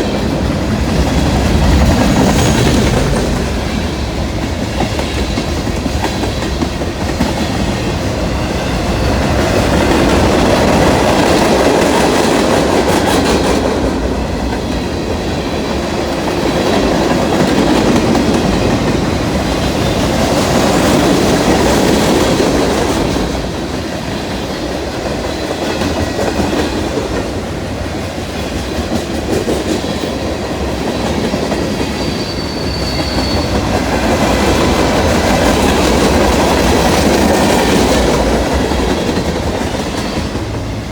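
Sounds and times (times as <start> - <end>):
freight train clattering past: 0.0 - 40.9.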